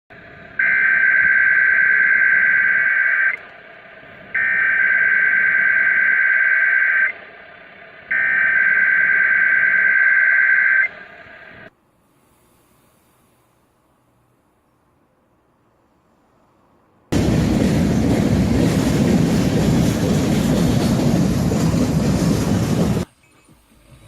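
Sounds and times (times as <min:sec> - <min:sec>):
radio hiss: 0:00.2 - 0:11.7
warbling data tones: 0:00.6 - 0:03.5, 0:04.4 - 0:07.2, 0:08.1 - 0:11.7.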